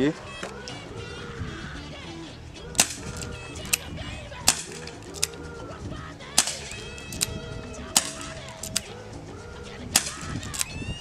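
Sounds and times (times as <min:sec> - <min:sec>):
background music: 0:00.0 - 0:11.0
airsoft revolver shots: 0:02.7 - 0:05.4, 0:06.3 - 0:08.9, 0:09.9 - 0:10.8
faint revolver clicks: 0:02.8 - 0:05.4, 0:06.3 - 0:09.0, 0:10.0 - 0:10.8.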